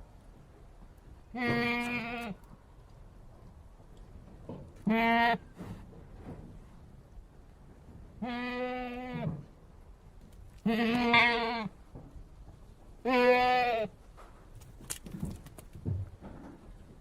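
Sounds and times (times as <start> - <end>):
goat bleating: 1.3 - 2.5, 4.8 - 5.6, 8.2 - 9.4, 10.6 - 11.8, 13.0 - 14.0.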